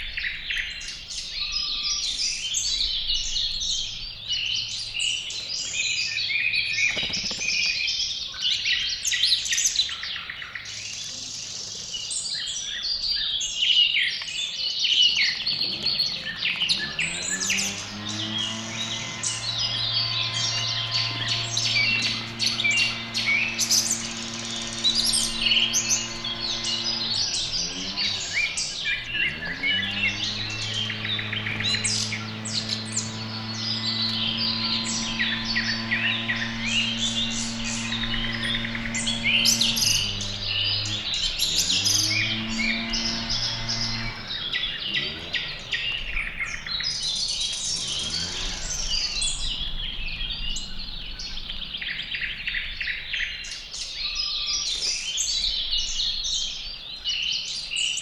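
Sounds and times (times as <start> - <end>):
songbirds chirping: 0.0 - 58.0
low drone bending in pitch: 15.4 - 53.2.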